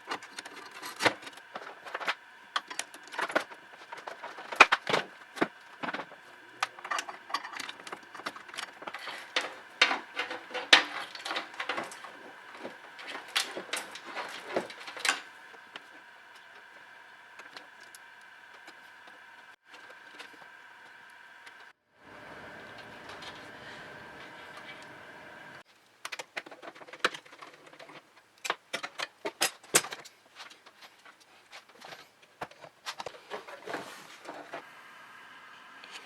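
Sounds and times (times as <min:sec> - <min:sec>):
small hard parts clicking: 0:00.0 - 0:16.8
faint steady hum: 0:00.0 - 0:36.0.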